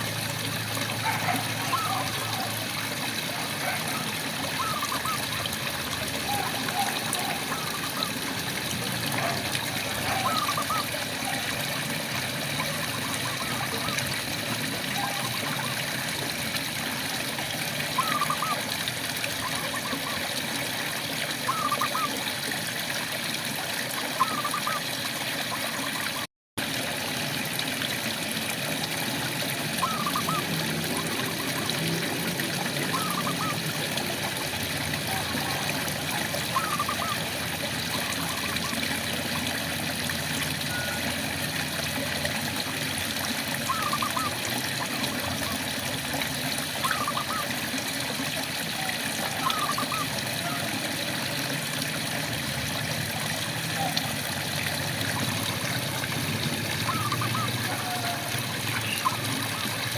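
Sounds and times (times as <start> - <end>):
frog calling: 1.0 - 2.6, 4.6 - 5.6, 10.0 - 11.5, 12.6 - 14.0, 15.0 - 15.7, 17.9 - 18.6, 21.5 - 22.2, 24.1 - 24.9, 29.8 - 31.9, 32.7 - 33.8, 35.0 - 39.0, 43.7 - 45.6, 46.8 - 47.5, 48.8 - 50.8, 56.5 - 59.9.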